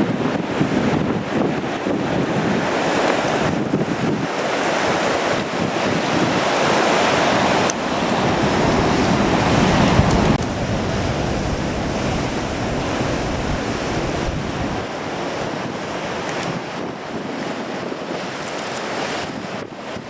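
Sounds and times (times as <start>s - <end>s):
wind buffeting microphone: 0.0s - 20.0s
surf breaking on rocks: 1.4s - 20.0s
low gust rumble: 5.2s - 16.7s.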